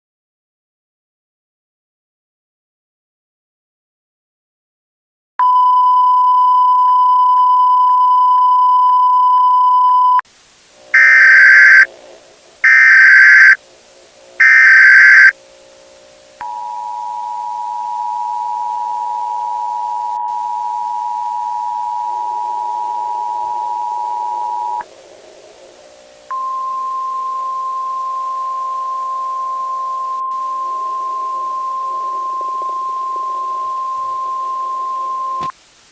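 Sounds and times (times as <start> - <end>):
steady test tone: 10.8 - 18.0, 21.6 - 35.5
harsh digital data bursts: 11.0 - 11.9, 12.6 - 13.6, 14.4 - 15.3
two-tone alert signal: 11.0 - 11.9, 12.6 - 13.6, 14.4 - 15.3.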